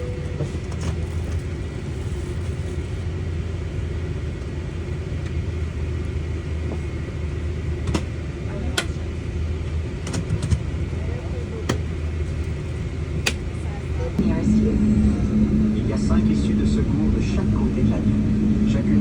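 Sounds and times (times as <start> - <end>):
airliner cabin rumble: 0.0 - 19.0
faint thin whine: 14.2 - 19.0.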